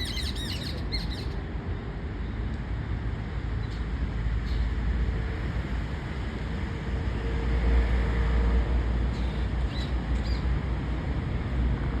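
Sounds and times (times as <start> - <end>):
bird chirps: 0.0 - 1.4.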